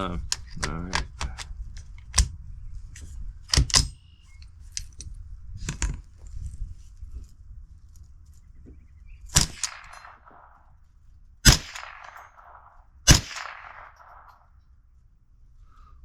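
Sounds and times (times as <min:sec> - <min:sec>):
gunshots with echo: 0:09.4 - 0:10.8, 0:11.4 - 0:14.6.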